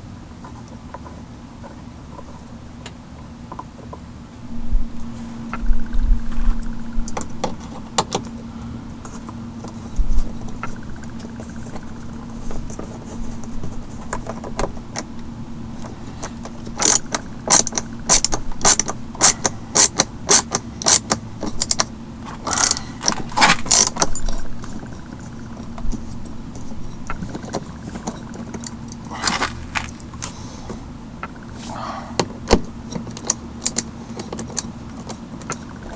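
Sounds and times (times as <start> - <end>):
low hum: 3.8 - 33.0
tools clattering on car door: 22.5 - 25.7, 26.6 - 30.3.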